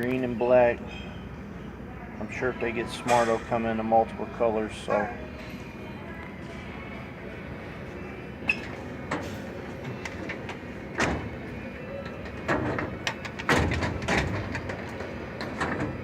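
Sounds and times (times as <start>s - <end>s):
metal clicks and clunks: 12.0s - 16.0s.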